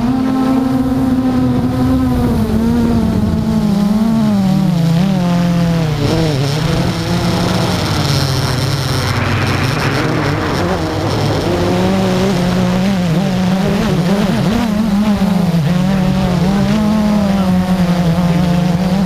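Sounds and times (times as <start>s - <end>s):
drone motors humming: 0.0s - 19.0s
thin high whine: 7.0s - 14.1s.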